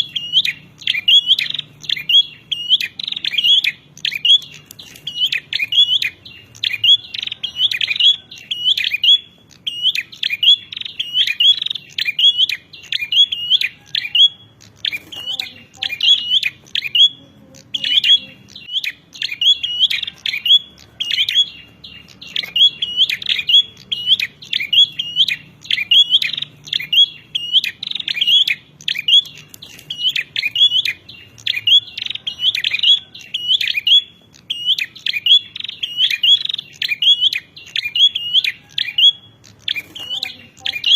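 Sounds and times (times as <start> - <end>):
bird chattering chirps: 0.0 - 40.9.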